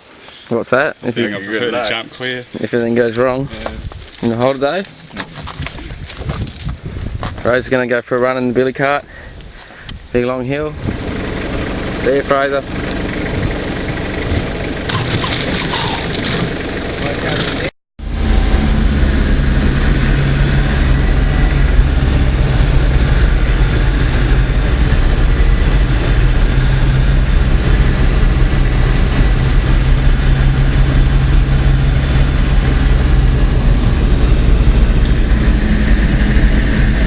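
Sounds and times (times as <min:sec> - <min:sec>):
road and wind noise: 0:00.0 - 0:37.0
car engine running: 0:10.5 - 0:37.0.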